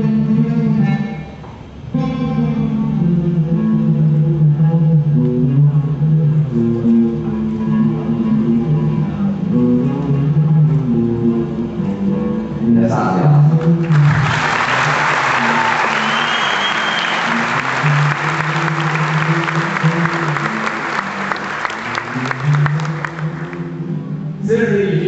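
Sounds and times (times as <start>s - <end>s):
guitar playing: 0.0s - 25.0s
audience applause: 13.8s - 23.7s.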